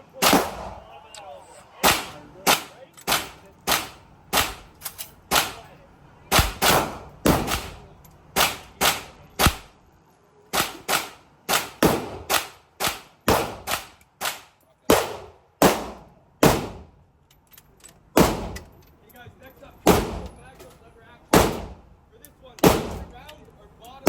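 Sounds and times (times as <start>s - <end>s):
gunshots echoing indoors: 0.2s - 1.0s, 1.8s - 4.7s, 6.3s - 7.8s, 21.3s - 21.8s, 22.6s - 23.1s.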